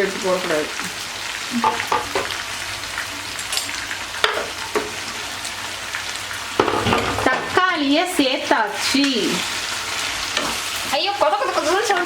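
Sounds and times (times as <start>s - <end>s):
chicken sizzling in a pan: 0.0s - 12.0s
spoon knocking and scraping pan: 1.6s - 2.4s, 4.2s - 5.1s, 6.5s - 7.6s, 10.3s - 10.7s.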